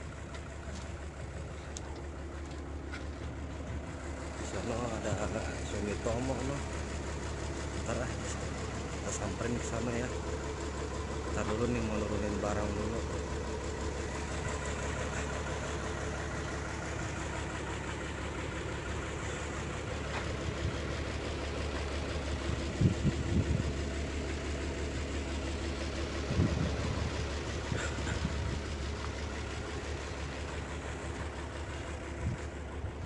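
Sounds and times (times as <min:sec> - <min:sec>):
engine idling: 0:00.0 - 0:33.0.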